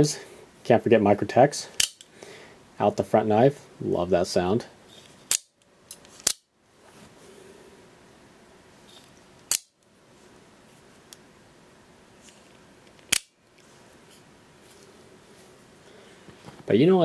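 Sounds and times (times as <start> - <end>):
knife blade metallic snaps: 9.5 - 9.8.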